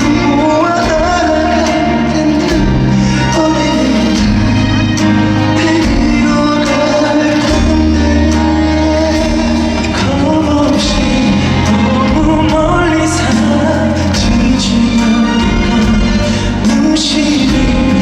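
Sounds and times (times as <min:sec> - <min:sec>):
band playing: 0:00.0 - 0:18.0
bass notes: 0:00.0 - 0:18.0
man singing pop ballad: 0:00.0 - 0:18.0
drum beat: 0:02.5 - 0:03.0, 0:04.1 - 0:05.1, 0:05.7 - 0:08.5, 0:09.1 - 0:10.1, 0:10.7 - 0:18.0.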